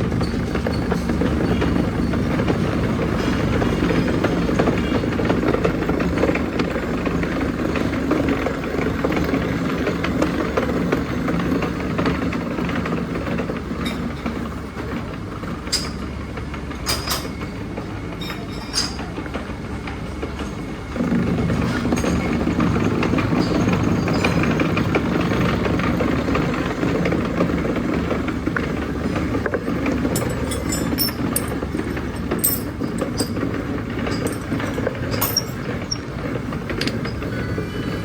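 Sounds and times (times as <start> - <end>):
milling machine running: 28.5 - 37.1.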